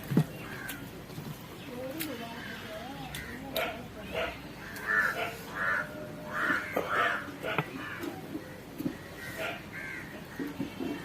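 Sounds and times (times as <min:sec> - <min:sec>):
crows cawing: 0:00.4 - 0:00.9, 0:04.6 - 0:11.0.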